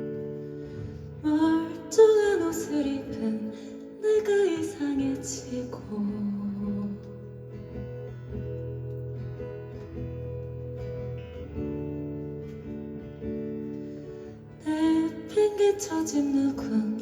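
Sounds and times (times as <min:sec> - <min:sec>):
acoustic guitar strumming chords: 0:00.0 - 0:17.0
person singing: 0:01.2 - 0:07.2, 0:14.6 - 0:17.0.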